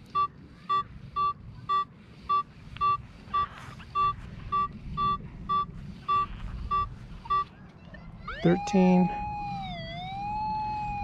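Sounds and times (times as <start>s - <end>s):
metal detector beeps: 0.1s - 7.5s.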